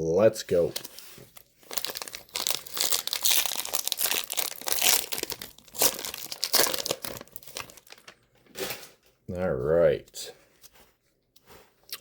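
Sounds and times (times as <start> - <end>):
plastic wrapper crinkling and tearing: 0.7 - 8.6.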